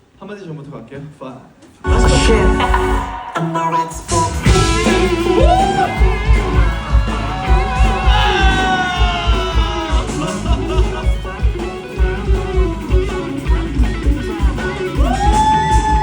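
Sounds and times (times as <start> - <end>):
electric guitar solo: 1.8 - 16.0
kick drum beat: 4.5 - 16.0.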